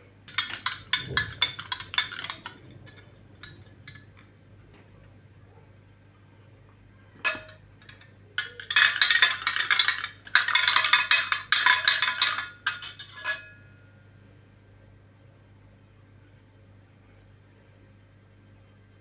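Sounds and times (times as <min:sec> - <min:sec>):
kitchen utensils clinking: 0:00.3 - 0:04.2, 0:07.2 - 0:13.6.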